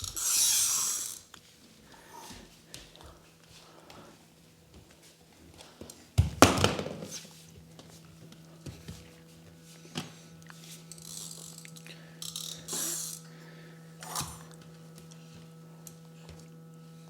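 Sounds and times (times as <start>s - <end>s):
toy car mechanical clicks: 0.0s - 1.3s, 10.9s - 13.2s
steady low hum: 0.0s - 17.0s.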